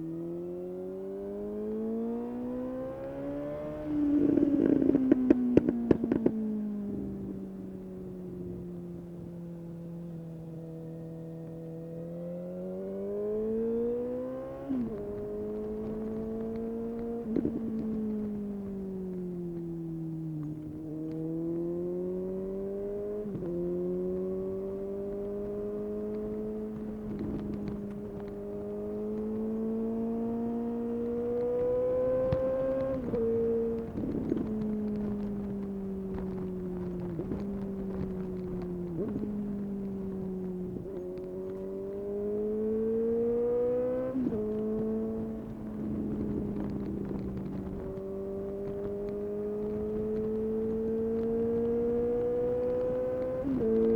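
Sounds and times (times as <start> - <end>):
motorcycle engine accelerating: 0.0 - 53.9
exhaust crackles: 13.4 - 53.9.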